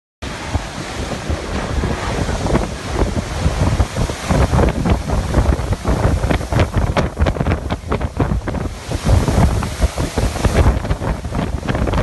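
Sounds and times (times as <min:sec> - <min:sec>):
strong wind buffeting microphone: 0:00.2 - 0:12.0.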